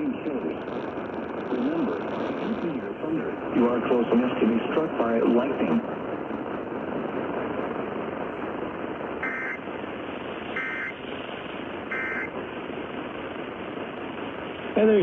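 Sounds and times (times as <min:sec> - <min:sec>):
radio hiss: 0:00.0 - 0:15.0
digital warbling data bursts: 0:09.2 - 0:09.6, 0:10.5 - 0:11.0, 0:11.9 - 0:12.3.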